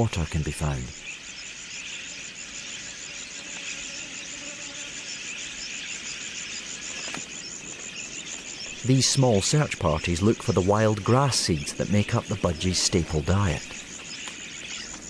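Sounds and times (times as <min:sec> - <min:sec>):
budgerigar flock chirping: 0:05.0 - 0:14.9.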